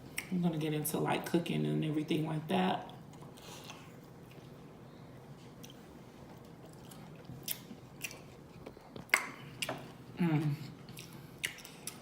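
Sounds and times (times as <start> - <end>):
person chewing: 5.5 - 12.0.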